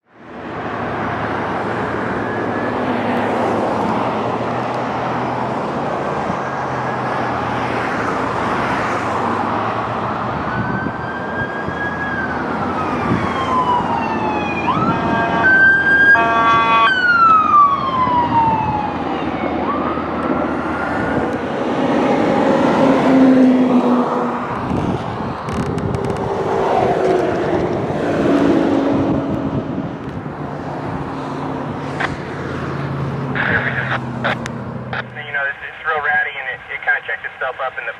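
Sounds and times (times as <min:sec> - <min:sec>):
road noise: 0:00.0 - 0:37.9
siren wailing: 0:02.0 - 0:02.9, 0:10.4 - 0:21.3
air horn blast: 0:14.9 - 0:17.0.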